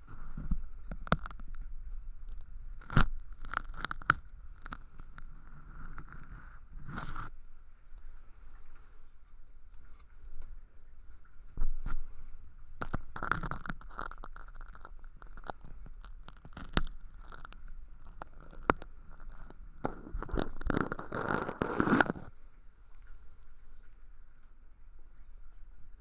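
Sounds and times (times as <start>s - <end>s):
tool scraping fake earwax: 2.8s - 7.3s, 12.8s - 22.3s.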